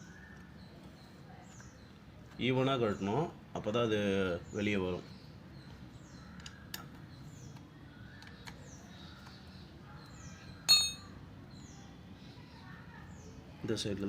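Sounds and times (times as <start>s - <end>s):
birds chirping: 0.0s - 14.0s
metallic clink: 10.7s - 11.1s.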